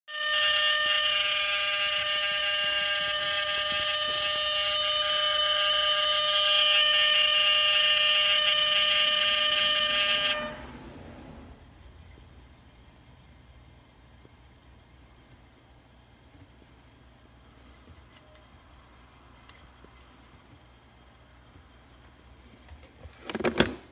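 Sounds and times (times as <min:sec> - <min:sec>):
drone gimbal high-pitched whine: 0:00.1 - 0:12.2.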